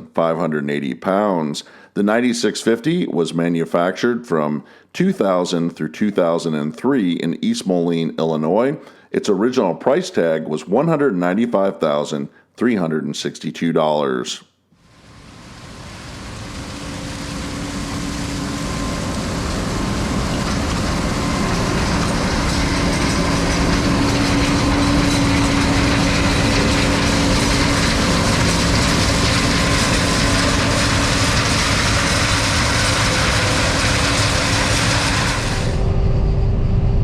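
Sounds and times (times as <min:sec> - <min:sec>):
combine harvester engine droning: 0:14.9 - 0:37.0
machinery rattling: 0:15.4 - 0:36.9.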